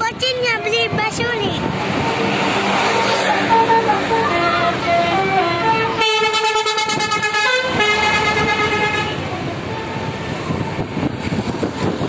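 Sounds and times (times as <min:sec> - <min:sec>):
bus multi-tone horn tune: 0:02.5 - 0:11.2.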